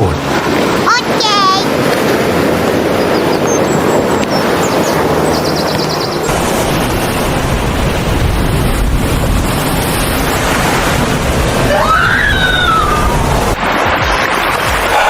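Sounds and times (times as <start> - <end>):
ocean surf rushing: 0.0 - 15.0.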